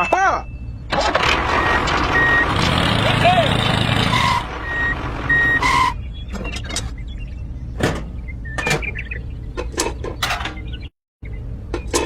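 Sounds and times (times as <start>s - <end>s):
reversing beeper: 0.0s - 6.0s.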